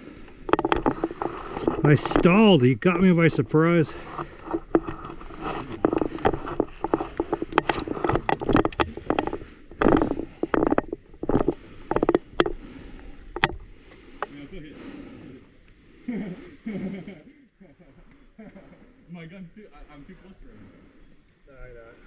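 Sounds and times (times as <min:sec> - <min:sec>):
rustling: 0:00.0 - 0:15.2
sharp knocks and clicks: 0:00.4 - 0:03.2, 0:03.9 - 0:14.3.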